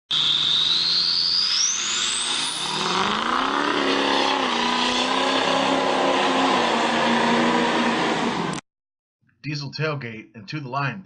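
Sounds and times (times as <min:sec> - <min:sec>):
engine revving with high whine: 0:00.1 - 0:08.6.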